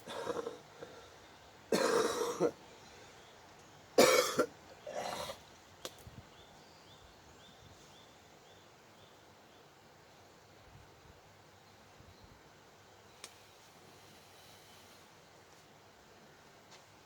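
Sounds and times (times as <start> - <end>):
man coughing: 1.7 - 2.6, 4.0 - 5.1.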